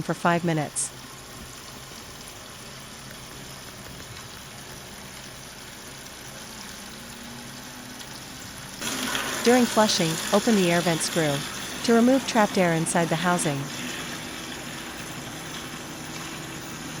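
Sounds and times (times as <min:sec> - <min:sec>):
water rushing through filter: 0:05.9 - 0:17.0.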